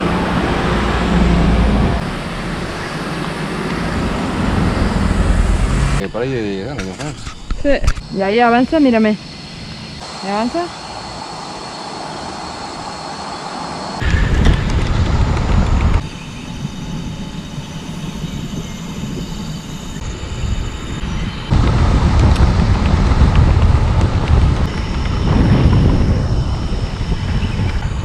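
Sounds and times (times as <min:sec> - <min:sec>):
loud low rumble: 0:00.0 - 0:06.1, 0:14.0 - 0:28.0
cicadas droning: 0:00.0 - 0:28.0.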